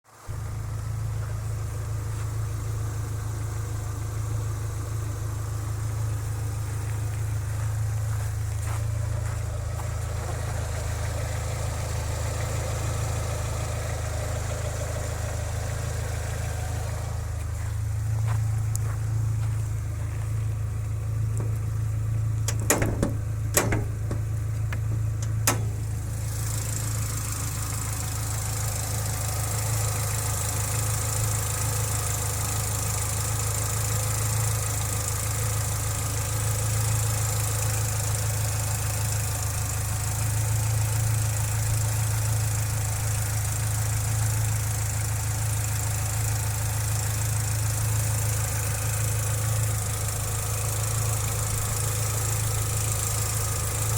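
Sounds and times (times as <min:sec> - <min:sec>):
car engine idling: 0:00.1 - 0:53.9
sharp clicks: 0:22.4 - 0:25.8.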